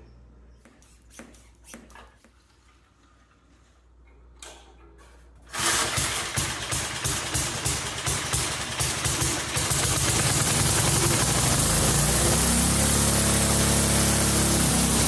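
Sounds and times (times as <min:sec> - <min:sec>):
snowblower engine running: 0:05.6 - 0:15.0.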